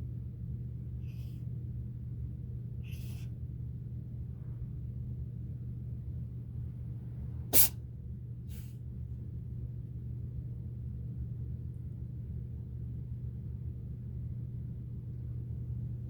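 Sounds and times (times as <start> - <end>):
cat sneezing: 2.8 - 3.3, 7.5 - 7.8, 8.5 - 8.8.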